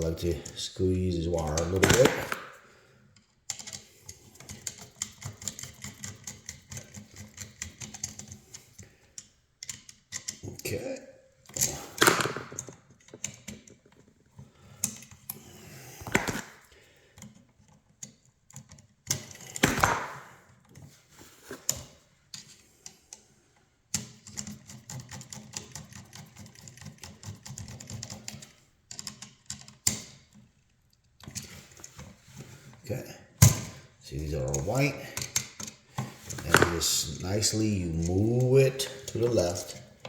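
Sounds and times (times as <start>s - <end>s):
hand tools clicking and tapping: 1.4s - 2.6s, 3.2s - 10.6s, 11.4s - 20.9s, 34.4s - 40.0s.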